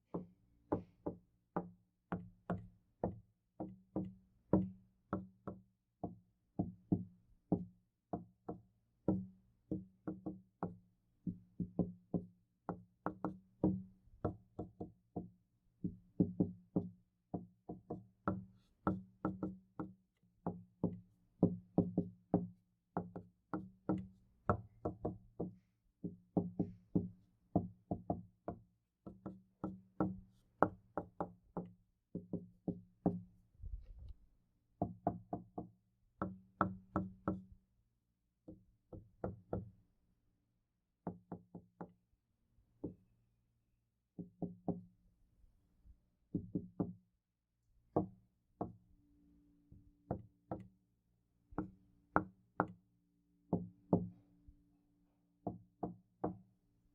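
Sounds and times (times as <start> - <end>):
knuckles knocking on wooden door: 0.1 - 33.2, 41.0 - 42.0, 46.3 - 47.0.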